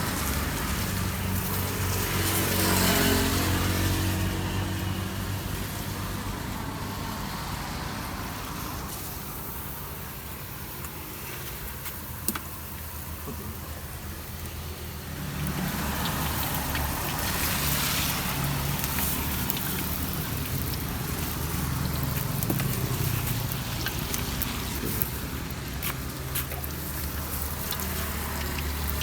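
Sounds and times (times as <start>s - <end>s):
vehicle engine running: 12.0s - 29.0s.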